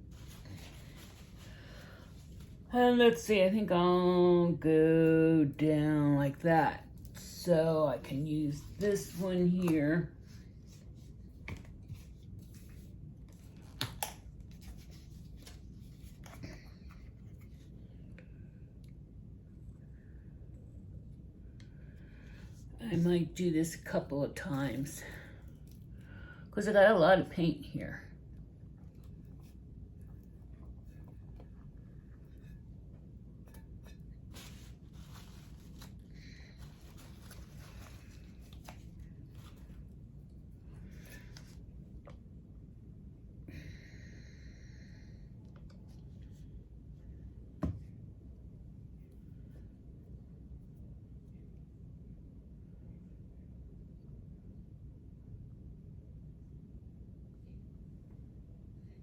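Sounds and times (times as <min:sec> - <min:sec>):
faint rustling and scraping: 0:00.0 - 0:02.7, 0:07.0 - 0:13.8, 0:14.5 - 0:18.4, 0:28.7 - 0:42.2.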